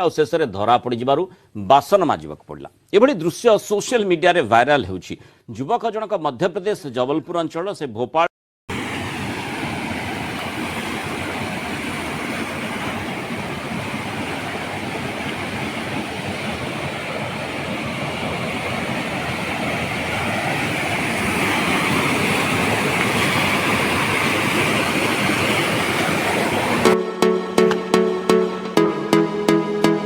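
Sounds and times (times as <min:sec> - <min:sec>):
waterfall rushing: 0:08.7 - 0:28.8.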